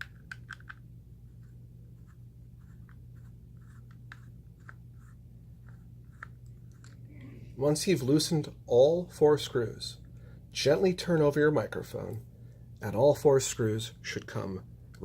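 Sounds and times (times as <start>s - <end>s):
screwdriver clicks and scratches: 0.0s - 0.8s
steady low hum: 0.0s - 15.0s.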